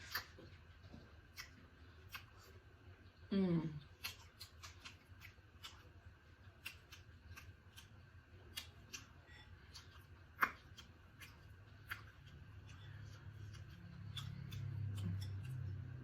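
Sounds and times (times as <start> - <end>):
chewing clicks and smacks: 0.0 - 3.0, 3.8 - 16.0.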